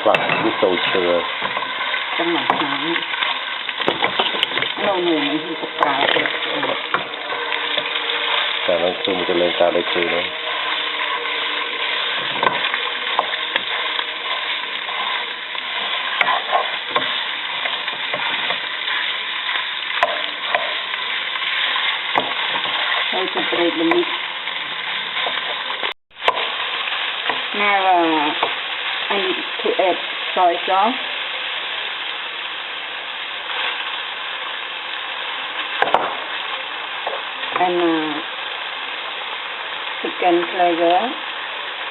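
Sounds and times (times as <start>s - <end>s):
meat sizzling in a pan: 0.0s - 41.9s
utensil scraping and knocking pan: 10.5s - 18.6s.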